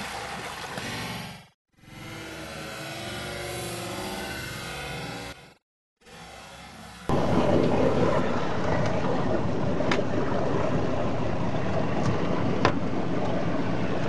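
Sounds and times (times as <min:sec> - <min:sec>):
sea noise: 0:07.1 - 0:14.0.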